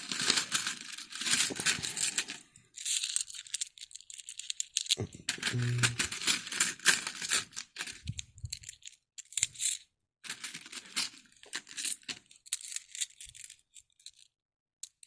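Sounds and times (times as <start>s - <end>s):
coins clinking in hand: 0.0s - 8.0s.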